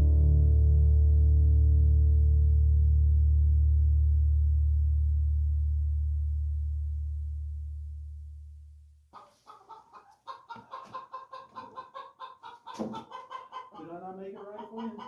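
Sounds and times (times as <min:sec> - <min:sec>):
chickens clucking: 0:09.2 - 0:15.0.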